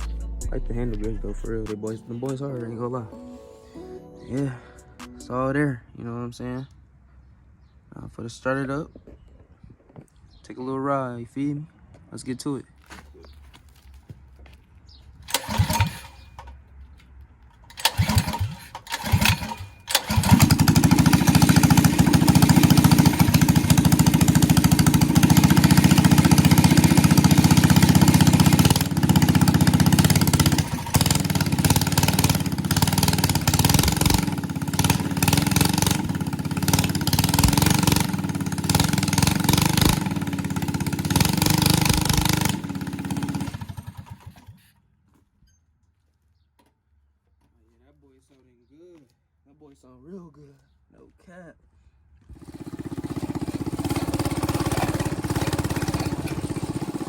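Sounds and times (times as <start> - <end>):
engine starting and running: 0.0 - 2.0, 15.2 - 16.7, 17.5 - 44.9, 52.2 - 57.0.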